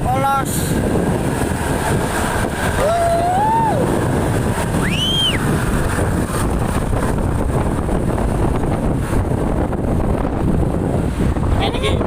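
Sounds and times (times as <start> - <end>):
vehicle rumble: 0.0 - 12.0
wind buffeting microphone: 0.0 - 12.0.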